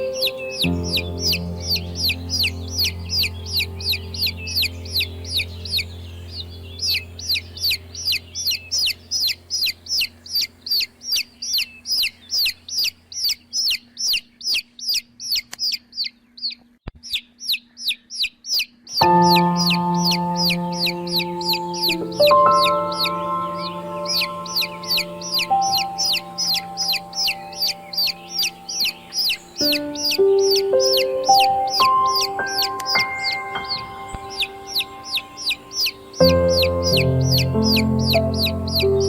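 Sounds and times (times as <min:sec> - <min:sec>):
soft music pad: 0:00.0 - 0:11.2, 0:19.0 - 0:39.0
baby chicks peeping: 0:00.0 - 0:39.0.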